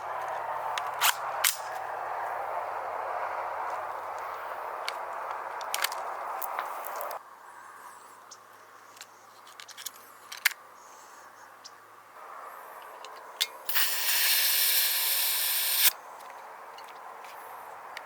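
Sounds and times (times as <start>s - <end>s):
compressed gas rushing out: 13.7s - 15.9s.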